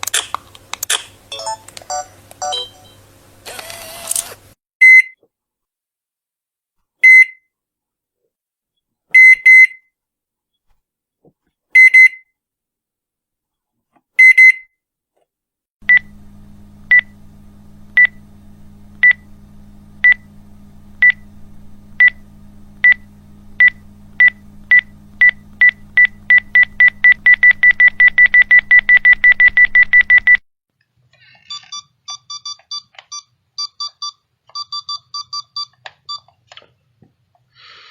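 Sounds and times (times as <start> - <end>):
low hum: 15.8 - 30.3
two-pitched beeps: 32.1 - 36.2.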